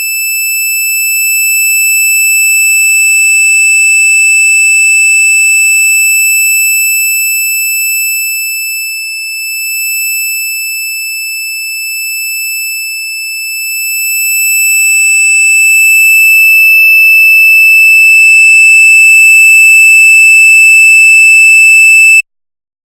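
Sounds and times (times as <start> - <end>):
high-pitched electronic tone: 14.9 - 22.2.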